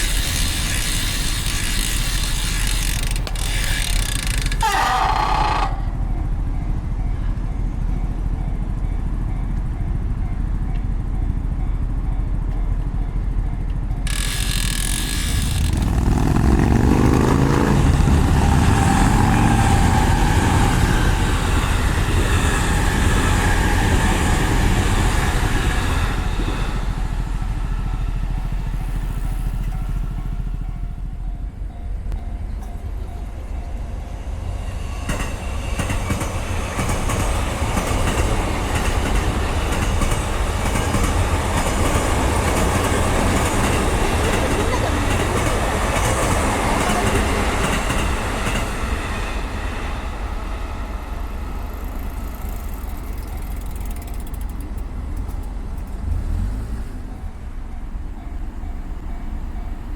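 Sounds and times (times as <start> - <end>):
road and wind noise: 0.0 - 59.9
road traffic passing: 0.0 - 59.9
motor vehicle accelerating: 14.9 - 27.3, 55.8 - 57.5.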